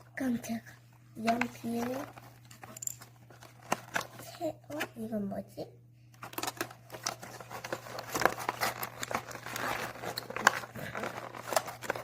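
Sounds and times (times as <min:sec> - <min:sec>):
packaging crinkling and tearing: 0:01.2 - 0:04.4, 0:06.2 - 0:12.0.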